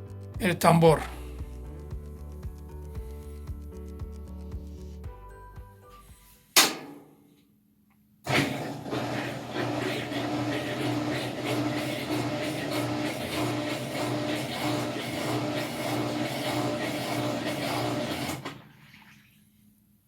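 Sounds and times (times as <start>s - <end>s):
sharp click: 6.6s - 7.1s
washer drain pump humming: 8.3s - 18.8s.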